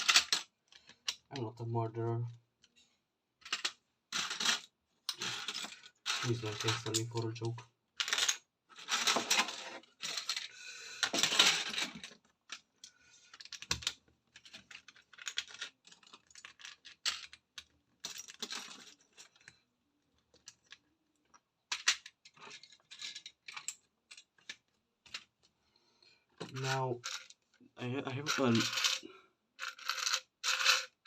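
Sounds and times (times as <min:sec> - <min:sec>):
plastic bricks clattering: 0:00.0 - 0:01.3, 0:13.2 - 0:19.5, 0:28.2 - 0:31.0.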